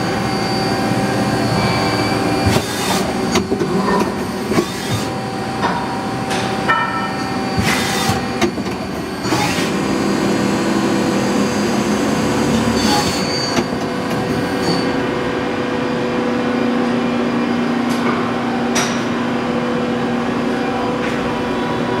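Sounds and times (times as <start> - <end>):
machine hum: 0.0 - 22.0.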